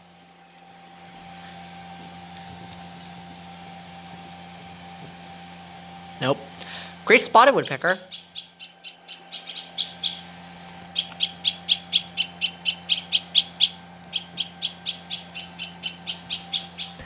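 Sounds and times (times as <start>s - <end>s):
woodpecker calls from toy: 7.1s - 17.0s.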